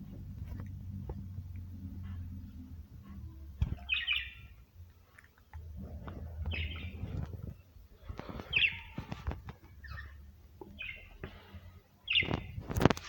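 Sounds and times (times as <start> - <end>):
low rumble: 0.0 - 4.9, 5.6 - 8.3
budgerigars chirping: 3.7 - 4.6, 6.4 - 7.2, 8.4 - 9.0, 9.8 - 11.3, 12.0 - 12.6.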